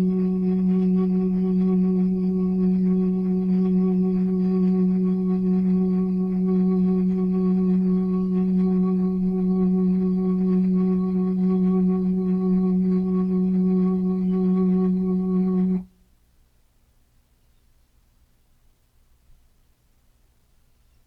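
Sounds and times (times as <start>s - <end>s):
tornado siren steady tone: 0.0s - 15.8s.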